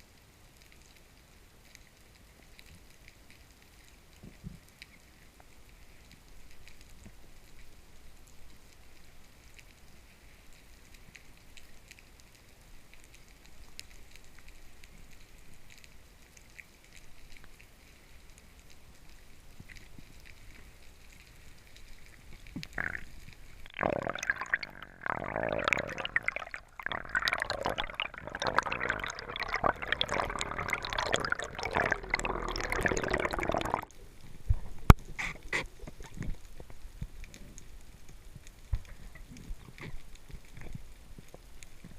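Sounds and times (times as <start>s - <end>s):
faint underwater crackle: 0.0s - 41.9s
water gurgling and bubbling: 22.6s - 33.9s.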